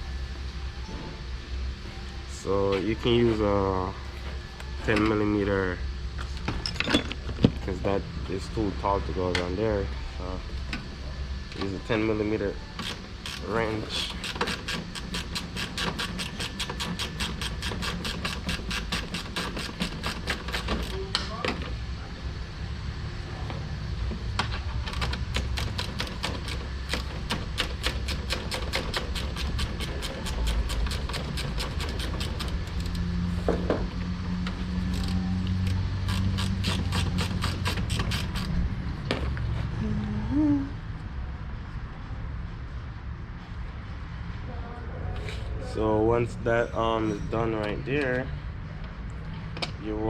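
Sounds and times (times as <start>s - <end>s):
steady low hum: 0.0s - 50.0s
ratcheting wrench clicking: 12.8s - 21.0s, 24.9s - 33.1s, 34.5s - 38.6s.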